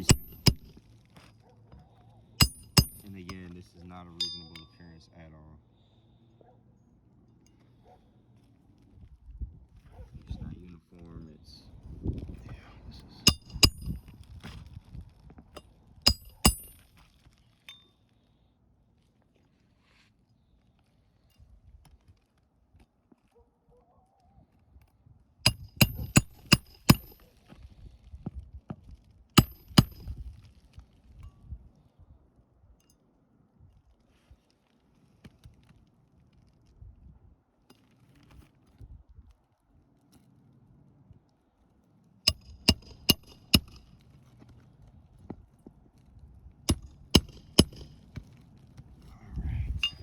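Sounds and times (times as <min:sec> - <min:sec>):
hammer striking roofing nails: 0:00.0 - 0:00.8, 0:02.4 - 0:03.3, 0:13.3 - 0:14.1, 0:16.1 - 0:16.9, 0:25.5 - 0:27.2, 0:29.4 - 0:30.2, 0:42.3 - 0:43.9, 0:46.7 - 0:48.1.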